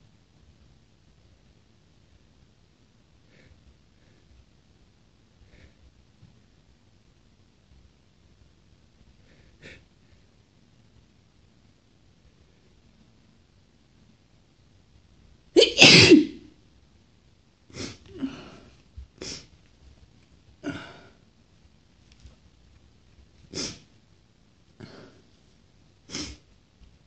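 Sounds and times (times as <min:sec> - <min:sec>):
woman sneezing: 0:15.6 - 0:16.5
sniffles: 0:17.7 - 0:19.5, 0:23.5 - 0:23.9, 0:26.1 - 0:26.5.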